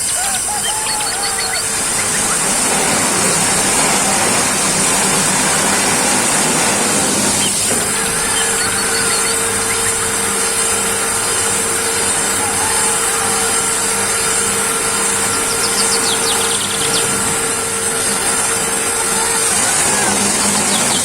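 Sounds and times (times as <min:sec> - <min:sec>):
motor hum: 0:00.0 - 0:21.0.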